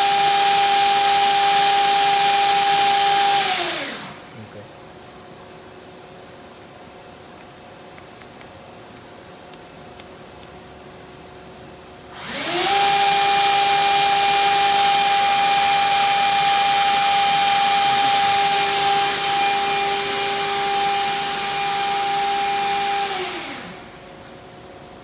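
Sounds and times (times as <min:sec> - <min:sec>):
machine spindle whining: 0:00.0 - 0:04.2, 0:12.2 - 0:24.0.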